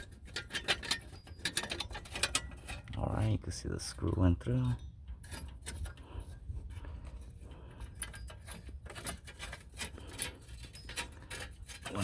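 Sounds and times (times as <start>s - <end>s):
metallic clicks of bolts threading: 0.0s - 3.0s.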